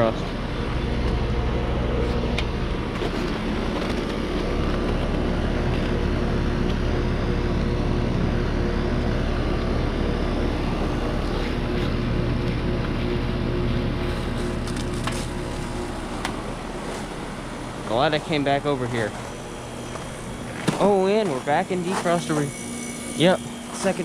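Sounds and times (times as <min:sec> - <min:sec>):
heat pump unit humming: 0:00.0 - 0:24.0.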